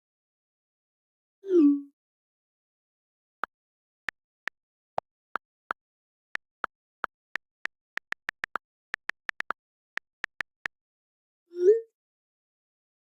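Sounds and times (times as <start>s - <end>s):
short sharp clicks: 7.4s - 10.8s.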